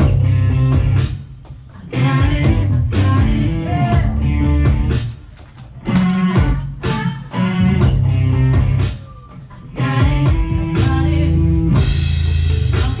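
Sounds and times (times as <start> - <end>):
live band music: 0.0 - 13.0
person singing: 1.8 - 5.0, 5.8 - 11.8.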